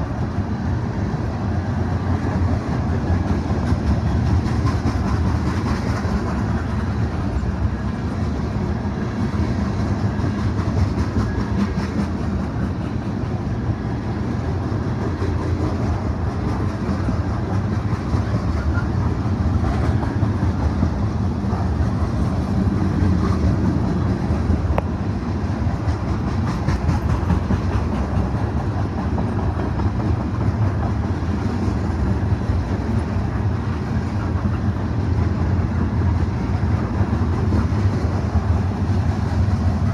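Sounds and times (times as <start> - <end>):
wheels clacking over rail joints: 1.8 - 39.9.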